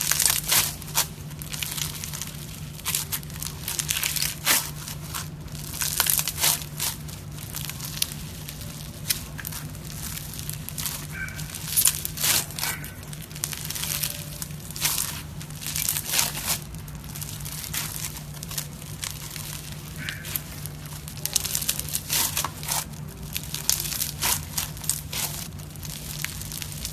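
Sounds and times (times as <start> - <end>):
slime crackling and popping: 0.0 - 26.9
steady low hum: 0.0 - 26.9.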